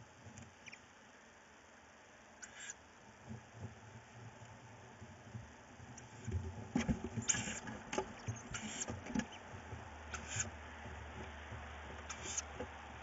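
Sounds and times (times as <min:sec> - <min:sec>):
owl chicks hissing calls: 0:02.4 - 0:02.8, 0:07.2 - 0:09.4, 0:10.1 - 0:10.5, 0:12.1 - 0:12.6
chicks scratching in a wooden box: 0:06.0 - 0:12.8.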